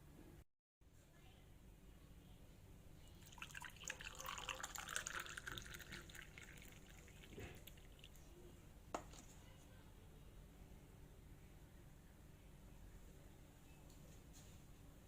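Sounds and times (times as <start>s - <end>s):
liquid dripping and splashing: 3.4s - 8.3s.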